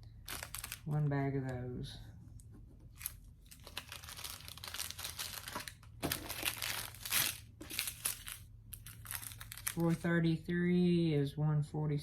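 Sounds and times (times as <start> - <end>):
plastic bags crinkling: 0.2 - 1.0, 2.9 - 10.1.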